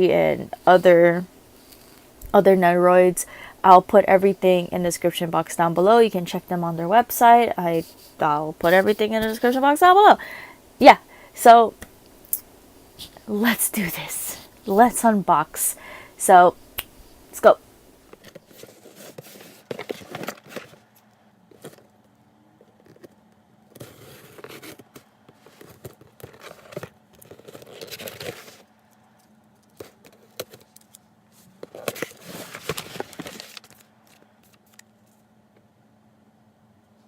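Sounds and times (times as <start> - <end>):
cardboard scraping and tearing: 23.8 - 24.9, 25.5 - 28.7, 31.6 - 33.8.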